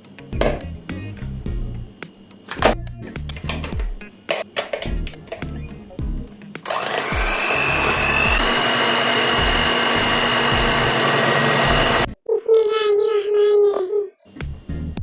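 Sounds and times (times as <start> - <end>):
blender motor whine: 6.7 - 12.1.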